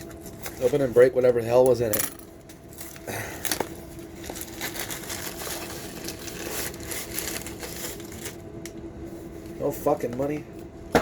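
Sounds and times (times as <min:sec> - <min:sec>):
faint steady hum: 0:00.0 - 0:11.0
mail packaging crinkling and tearing: 0:02.6 - 0:08.5.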